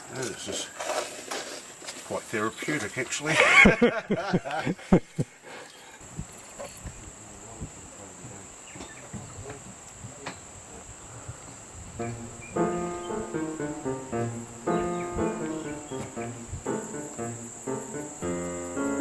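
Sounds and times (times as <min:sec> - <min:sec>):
insects chirring: 0:00.0 - 0:19.0
piano music: 0:12.0 - 0:19.0.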